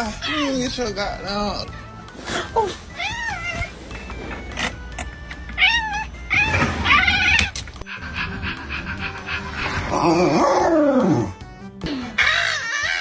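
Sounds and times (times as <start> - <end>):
puppy whining: 0.0 - 0.9, 2.3 - 4.5, 5.4 - 10.7
background music: 0.0 - 13.0.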